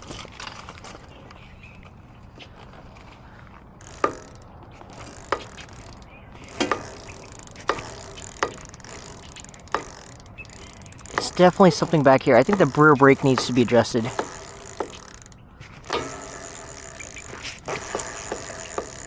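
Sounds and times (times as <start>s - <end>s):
bike wheel clicking: 3.8s - 19.0s.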